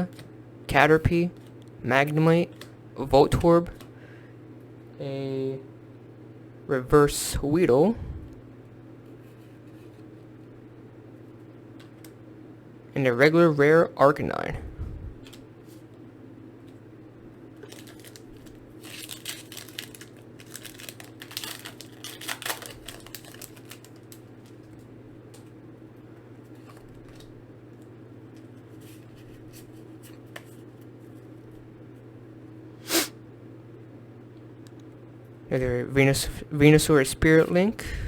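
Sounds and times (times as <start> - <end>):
steady low hum: 0.0 - 38.0
foil wrapper tearing and crinkling: 17.6 - 24.7.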